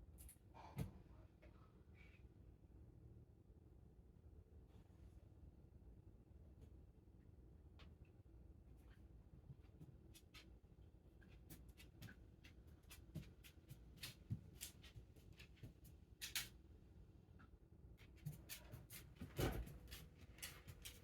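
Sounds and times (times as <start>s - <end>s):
low room hum: 0.0s - 21.0s
faint clicks and rustles: 18.0s - 21.0s.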